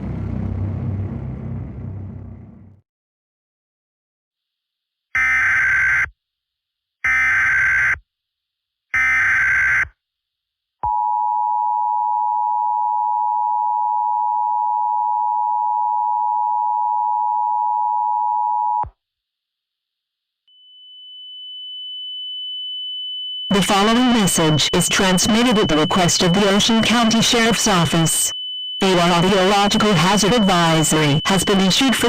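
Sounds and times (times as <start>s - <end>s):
steady attention tone: 20.5s - 32.0s.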